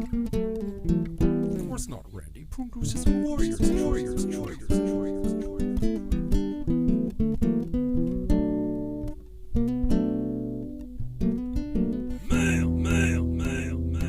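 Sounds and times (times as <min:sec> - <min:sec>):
acoustic guitar music: 0:00.0 - 0:14.0
steady pulsing rhythm: 0:12.2 - 0:14.0.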